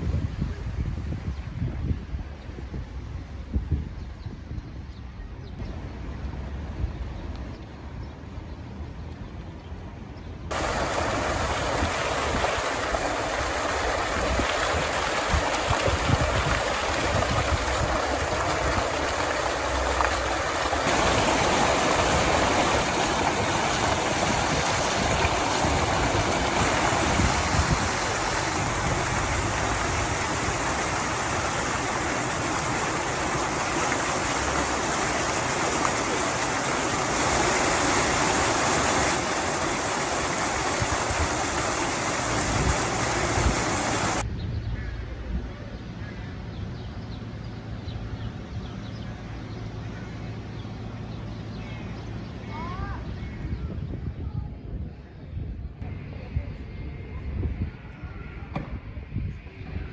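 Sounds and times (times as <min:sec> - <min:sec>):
wind rumbling on microphone: 0:00.0 - 0:49.1, 0:52.1 - 0:59.9
waves breaking: 0:10.5 - 0:44.2.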